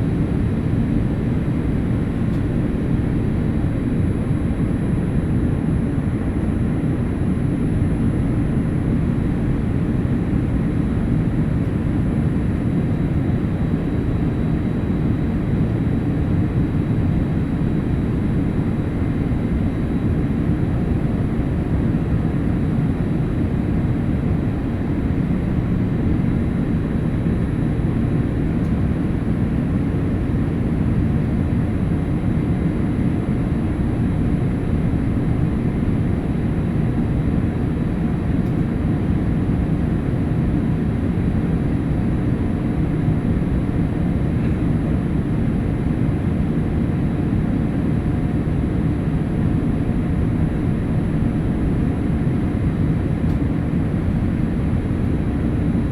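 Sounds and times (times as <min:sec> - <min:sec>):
aircraft cabin rumble: 0:33.3 - 0:48.2.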